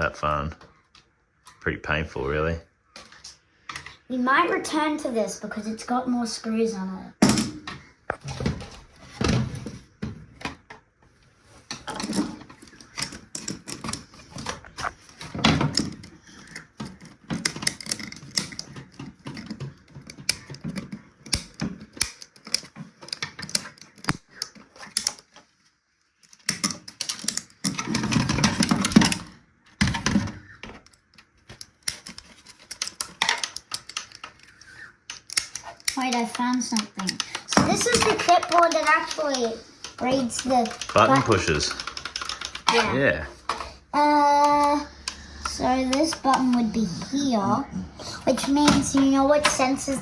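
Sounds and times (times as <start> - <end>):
plastic and metal parts clicking: 11.6 - 25.5, 26.2 - 47.4, 48.0 - 50.0.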